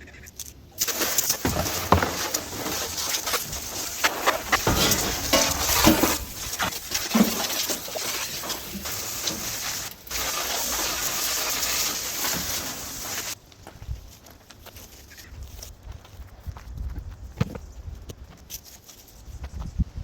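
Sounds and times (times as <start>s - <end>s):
water splashes and knocks: 0.8s - 10.0s
hose spraying water: 0.8s - 13.4s.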